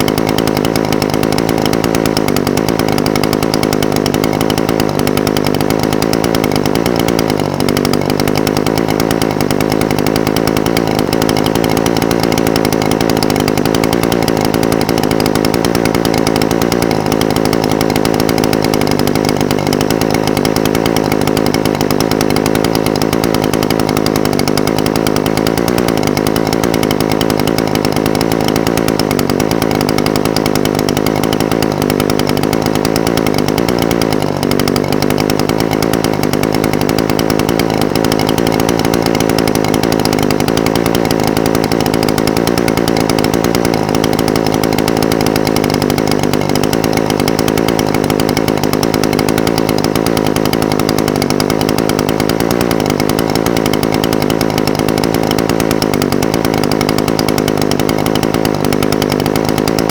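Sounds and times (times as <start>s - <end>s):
brush cutter engine idling: 0.0s - 59.9s.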